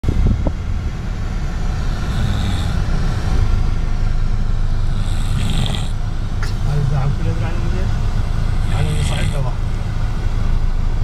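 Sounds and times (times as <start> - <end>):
person snoring loudly: 1.8 - 3.2, 4.8 - 6.0, 8.6 - 9.5.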